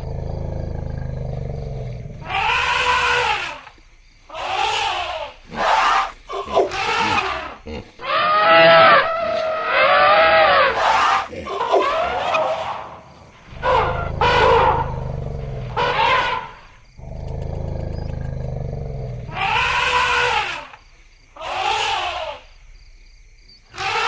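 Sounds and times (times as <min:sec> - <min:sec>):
elephants trumpeting: 0:02.2 - 0:03.7, 0:04.4 - 0:17.4, 0:18.6 - 0:20.8.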